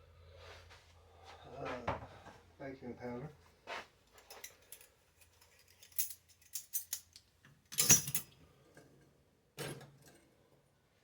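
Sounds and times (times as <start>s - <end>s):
metal utensils clinking and clattering: 7.8s - 8.3s.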